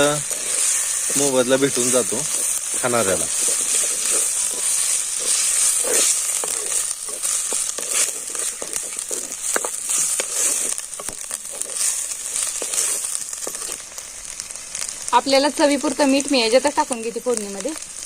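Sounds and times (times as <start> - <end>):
spatula scraping a pan: 0.0 - 13.9
food sizzling in hot oil: 0.0 - 18.0.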